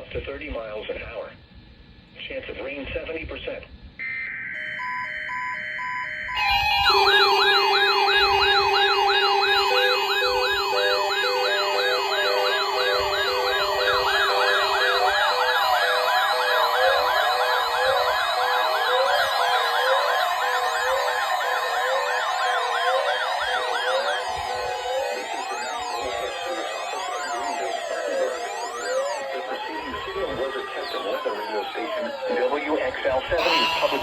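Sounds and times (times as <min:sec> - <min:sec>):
pulsing electronic tone: 0:04.0 - 0:32.8
siren whooping: 0:04.0 - 0:34.0
steady low tone: 0:05.7 - 0:16.8.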